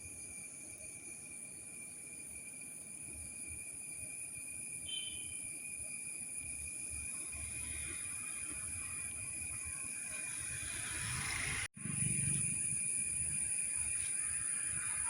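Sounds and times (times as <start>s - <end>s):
insects chirring: 0.0s - 15.0s.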